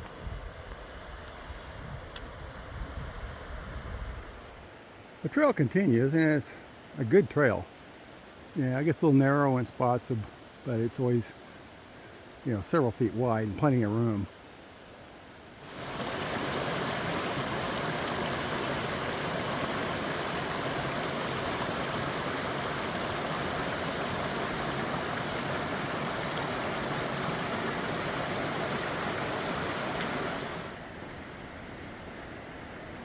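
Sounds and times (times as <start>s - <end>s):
rushing water: 15.6s - 31.0s.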